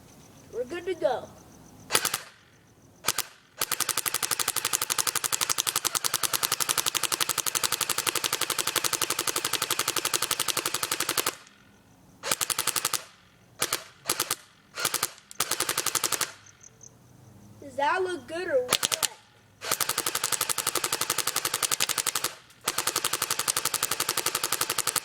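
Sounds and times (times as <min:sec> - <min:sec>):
submachine gun firing bursts: 0:01.9 - 0:11.6, 0:12.2 - 0:16.4, 0:18.7 - 0:25.0.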